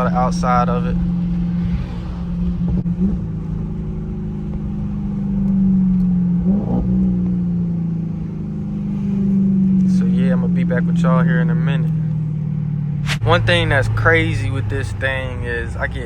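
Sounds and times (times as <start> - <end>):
car engine low drone: 0.0 - 16.0.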